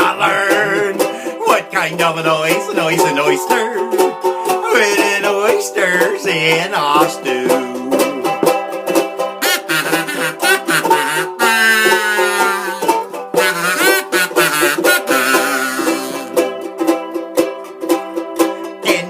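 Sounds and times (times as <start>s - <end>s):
ukulele strumming: 0.0s - 19.0s
kazoo melody: 2.5s - 6.0s, 6.7s - 17.6s.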